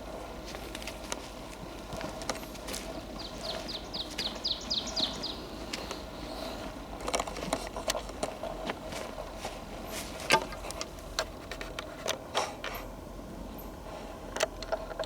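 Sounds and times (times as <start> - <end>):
footsteps on leaves and twigs: 0.0 - 11.7.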